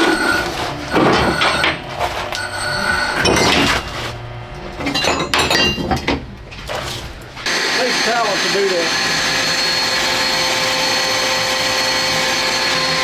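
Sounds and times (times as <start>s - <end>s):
hard objects clinking and clattering: 0.0s - 7.5s.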